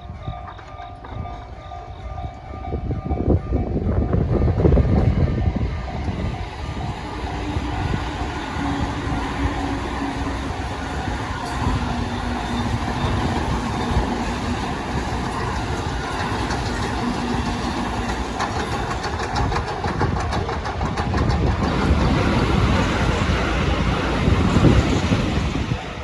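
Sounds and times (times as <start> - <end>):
train wheels rumbling on rails: 0.0 - 26.0
wheels clacking over rail joints: 0.0 - 26.0.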